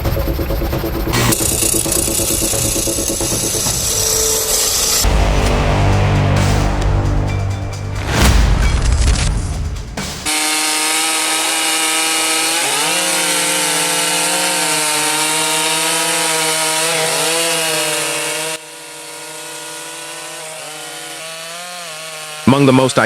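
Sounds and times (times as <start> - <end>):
chainsaw cutting wood: 1.0 - 5.8, 10.2 - 23.0.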